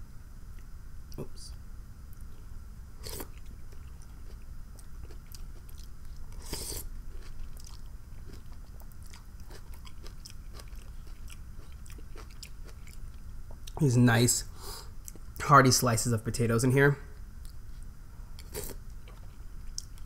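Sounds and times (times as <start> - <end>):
person chewing food: 2.1 - 13.8, 14.9 - 15.3, 17.4 - 20.0.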